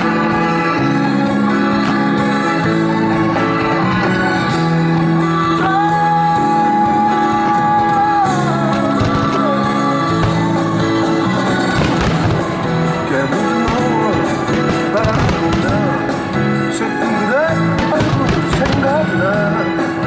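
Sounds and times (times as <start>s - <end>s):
fireworks bursting and crackling: 0.0s - 4.6s, 8.5s - 20.0s
loud music over a sound system: 0.0s - 20.0s.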